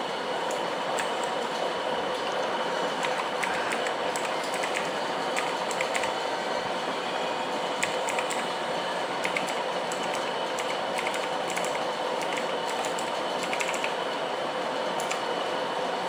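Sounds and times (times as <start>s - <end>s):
background hum and hiss: 0.0s - 16.0s
mechanical keyboard clicking: 1.0s - 1.4s, 3.0s - 6.2s, 7.8s - 8.5s, 9.2s - 14.0s, 15.0s - 15.3s.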